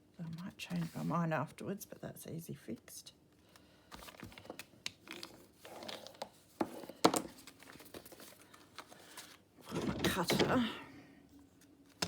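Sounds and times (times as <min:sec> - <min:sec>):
paper rustling: 0:07.3 - 0:09.8.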